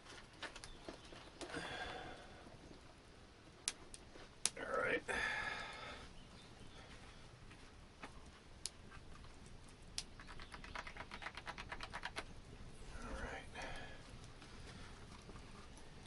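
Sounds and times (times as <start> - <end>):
scattered clicks: 10.0 - 12.3.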